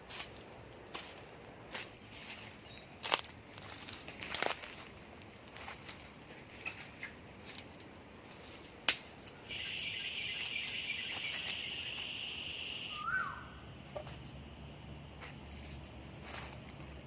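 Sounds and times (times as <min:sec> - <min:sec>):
rising-and-falling chirp: 0:09.5 - 0:13.7
insect trilling: 0:09.5 - 0:14.0.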